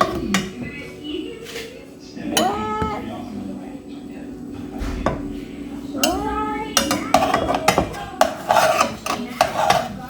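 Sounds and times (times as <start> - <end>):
metal utensil scraping a pot: 2.3 - 3.0, 5.0 - 10.0.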